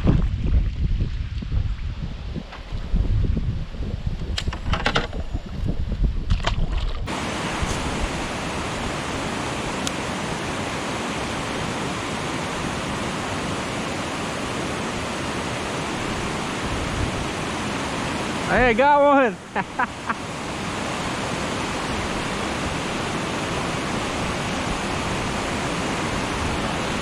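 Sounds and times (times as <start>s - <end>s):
rushing hiss of wind and water: 0.0s - 6.3s, 7.1s - 27.0s
wind buffeting microphone: 0.0s - 9.9s, 14.8s - 18.4s.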